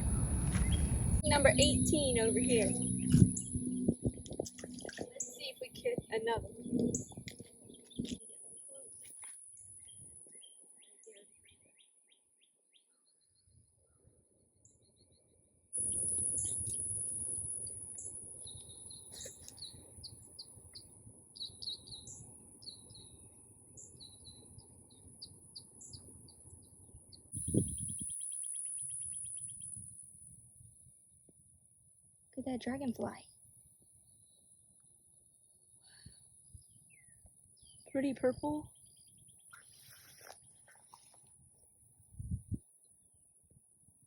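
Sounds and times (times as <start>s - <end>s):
low rumbling noise: 0.0s - 7.2s
insect drone: 0.0s - 9.9s, 15.8s - 19.4s, 27.3s - 30.8s
birds chirping: 0.0s - 11.5s.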